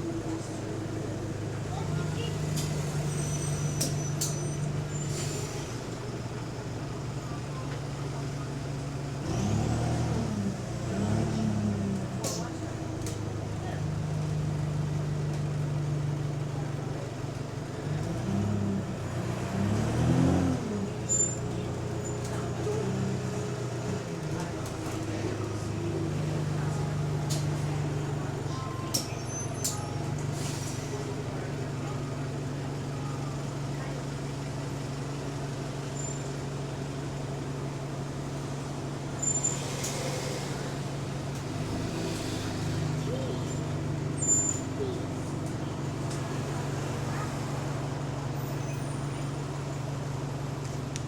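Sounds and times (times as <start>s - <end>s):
bus diesel engine revving: 0.0s - 50.8s.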